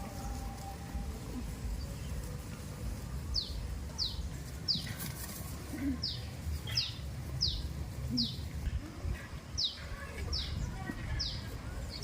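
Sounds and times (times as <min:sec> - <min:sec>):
small bird chirping: 0:03.3 - 0:04.9, 0:06.0 - 0:08.4.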